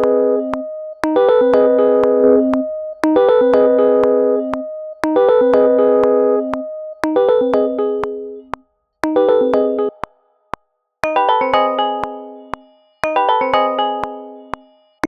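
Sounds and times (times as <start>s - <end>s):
electric piano synth notes: 2.2s - 2.8s
sharp beat clicks: 2.2s - 2.8s.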